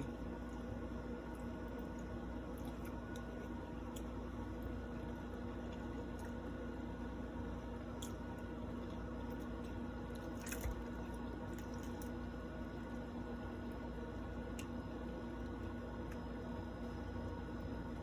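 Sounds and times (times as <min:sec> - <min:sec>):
person chewing wetly: 0:00.0 - 0:06.6, 0:07.9 - 0:13.0
steady low hum: 0:00.0 - 0:18.0.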